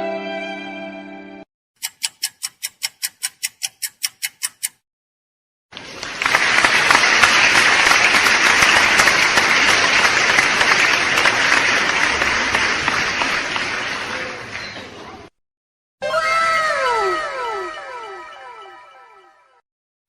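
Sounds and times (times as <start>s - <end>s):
crowd applauding: 5.7s - 15.2s.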